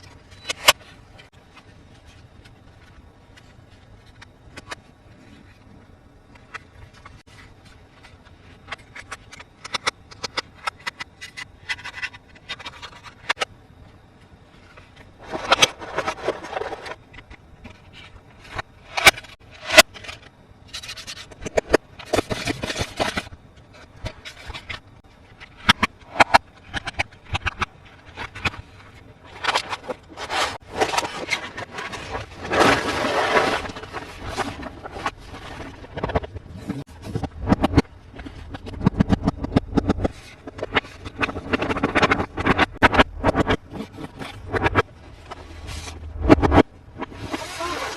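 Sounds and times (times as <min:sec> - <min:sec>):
packaging scraping and rustling: 0:14.6 - 0:21.4, 0:22.0 - 0:47.9.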